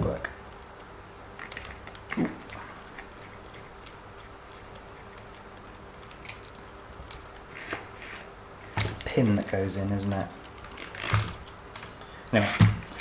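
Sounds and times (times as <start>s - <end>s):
low steady hum: 0.0s - 13.0s
small plastic parts clicking: 0.2s - 7.3s.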